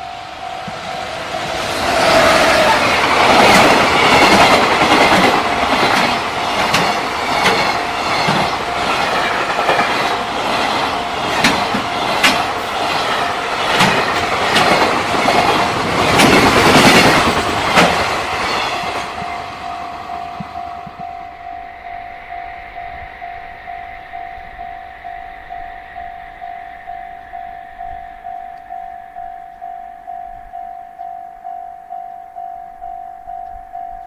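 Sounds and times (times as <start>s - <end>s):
freight train wheels clacking: 0.0s - 21.6s
level crossing bell ringing: 18.7s - 34.0s.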